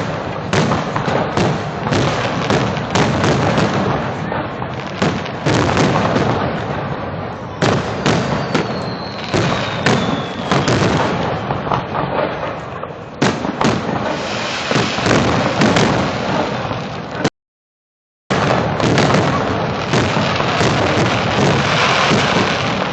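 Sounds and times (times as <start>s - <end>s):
fireworks booming and crackling: 0.0s - 17.3s, 18.3s - 22.9s
faint falling whistle: 8.1s - 11.7s.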